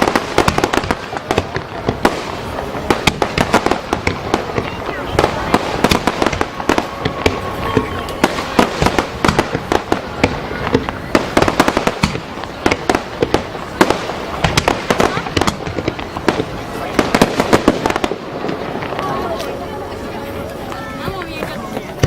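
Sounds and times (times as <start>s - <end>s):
fireworks bangs and crackling pops: 0.0s - 22.0s.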